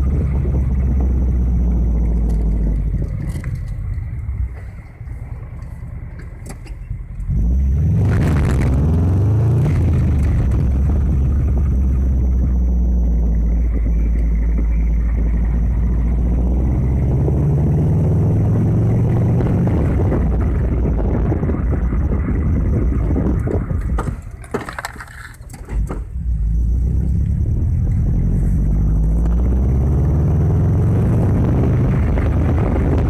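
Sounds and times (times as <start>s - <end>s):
car road and drivetrain rumble: 0.0s - 33.0s
suspension knocks: 19.8s - 28.1s.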